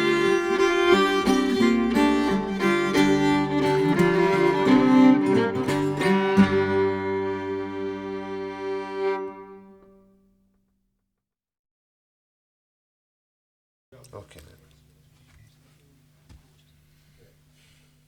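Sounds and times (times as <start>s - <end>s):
acoustic guitar chord ringing: 0.0s - 10.0s
fiddle: 0.0s - 10.2s.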